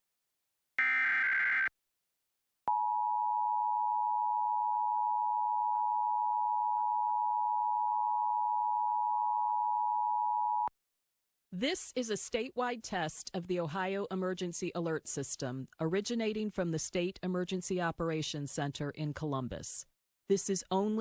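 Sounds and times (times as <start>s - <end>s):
raspy data screech: 0.8s - 1.7s
two-tone alarm: 0.8s - 1.7s.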